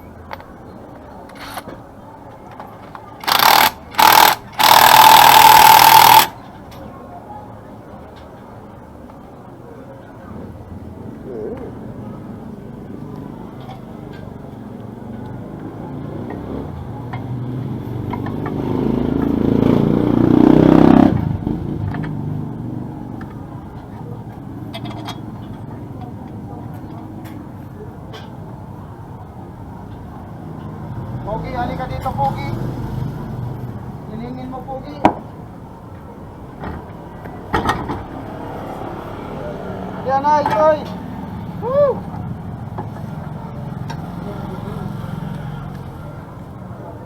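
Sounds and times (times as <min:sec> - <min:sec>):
pneumatic impact wrench: 0:03.2 - 0:06.4
small motorcycle engine revving: 0:03.2 - 0:06.4, 0:18.1 - 0:22.1.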